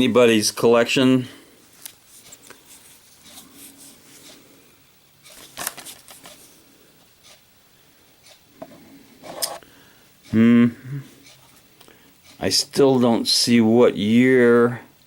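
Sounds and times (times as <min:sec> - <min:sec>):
soft rustles: 0:01.6 - 0:04.5, 0:05.2 - 0:07.4.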